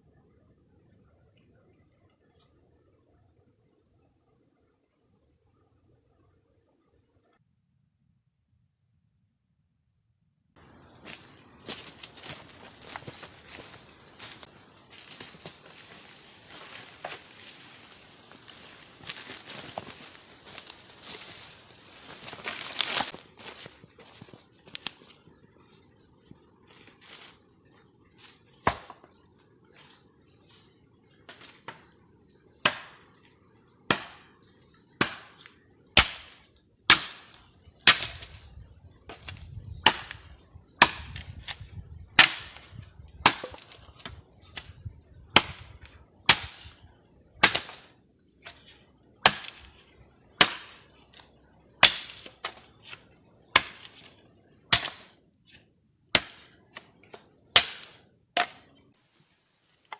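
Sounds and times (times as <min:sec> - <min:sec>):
blade chopping strikes: 0:28.7 - 0:29.1, 0:32.7 - 0:33.1, 0:33.9 - 0:34.3, 0:35.0 - 0:38.4, 0:39.1 - 0:41.6, 0:42.2 - 0:44.7, 0:45.3 - 0:46.8, 0:47.4 - 0:47.9, 0:48.5 - 0:49.8, 0:50.4 - 0:50.9, 0:51.8 - 0:53.0, 0:53.6 - 0:54.1, 0:54.7 - 0:55.1, 0:56.2 - 0:56.9, 0:57.6 - 0:58.6.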